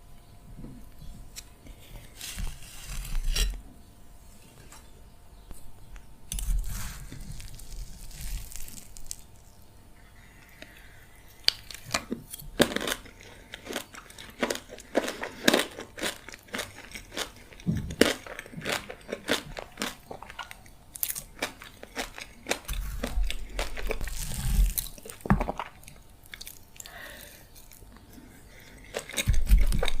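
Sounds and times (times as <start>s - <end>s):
chewing and biting cookie: 10.4s - 30.0s.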